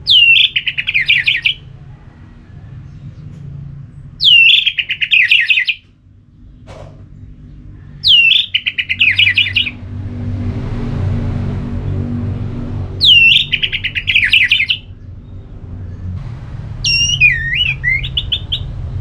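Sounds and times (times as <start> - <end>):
thrush singing: 0.0 - 1.6, 4.2 - 5.8, 8.0 - 9.8, 13.0 - 14.9, 16.9 - 18.7.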